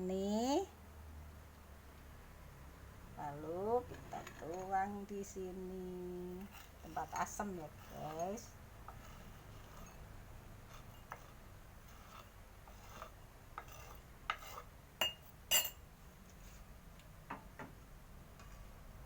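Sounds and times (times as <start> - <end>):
kitchenware clinking against glass: 14.4 - 15.8.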